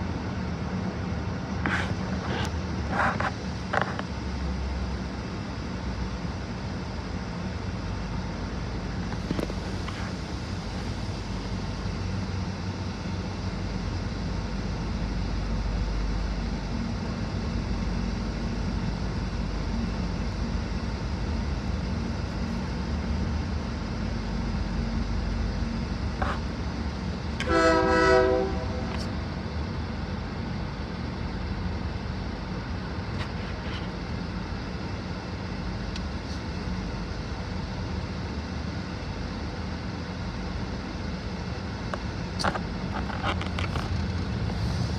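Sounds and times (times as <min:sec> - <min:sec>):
train rumbling slowly: 0:00.0 - 0:44.9
train horn blast: 0:27.4 - 0:29.1.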